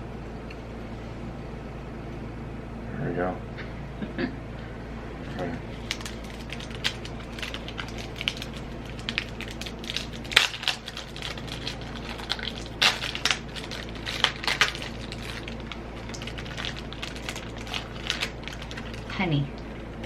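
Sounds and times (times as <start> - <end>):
plastic wrapper crinkling: 5.7 - 20.0.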